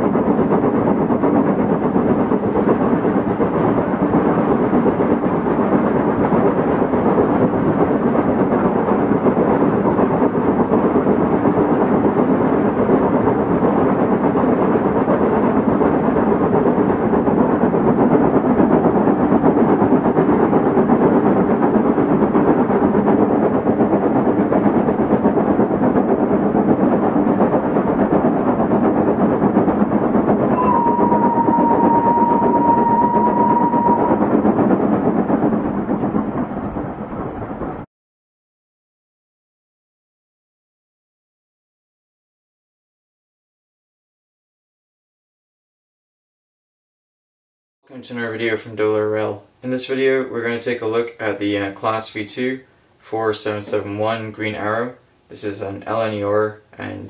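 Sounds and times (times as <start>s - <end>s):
train rumbling on rails: 0.0s - 37.9s, 47.9s - 57.0s
steady whistle-like tone: 30.5s - 34.6s.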